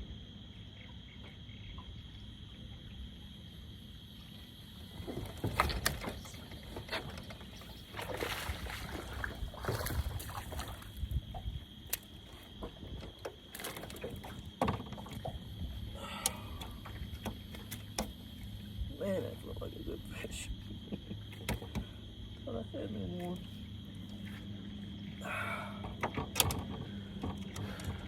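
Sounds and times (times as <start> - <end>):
night insects droning: 0.0 - 28.0
knocks and clicks against boat: 4.8 - 18.9, 19.6 - 28.0
water splashing: 4.9 - 11.2.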